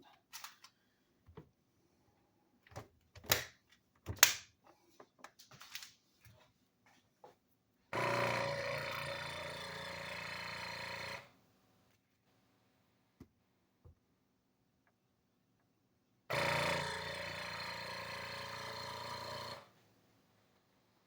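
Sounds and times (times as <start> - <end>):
small pump motor running: 8.0 - 11.2, 16.3 - 19.6.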